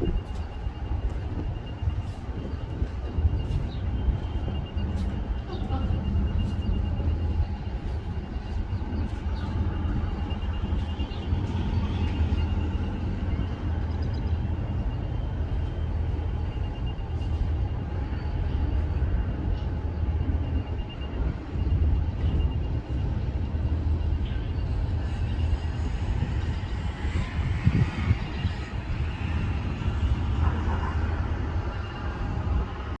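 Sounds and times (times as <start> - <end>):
faint high pulsing tone: 0.0 - 33.0
train rumbling: 0.0 - 33.0.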